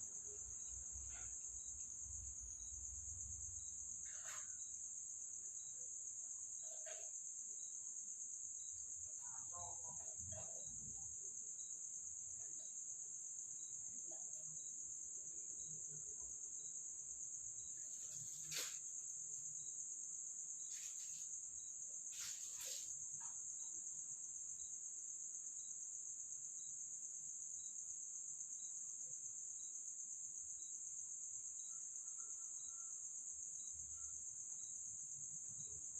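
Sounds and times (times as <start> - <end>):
crickets chirring: 0.0 - 35.9
short scraping noises: 4.0 - 4.7, 18.0 - 18.9, 22.1 - 23.0.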